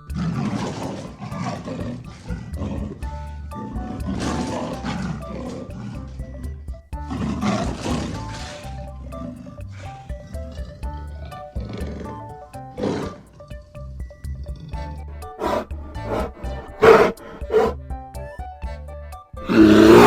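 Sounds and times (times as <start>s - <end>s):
background music: 0.0s - 20.0s
animal's harsh calls: 0.1s - 6.2s, 7.1s - 13.7s, 14.5s - 18.4s, 19.5s - 20.0s.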